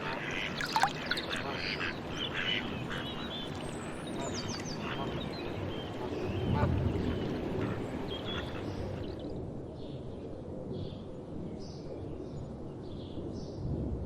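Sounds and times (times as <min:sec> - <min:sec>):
birds chirping: 0:00.0 - 0:09.3.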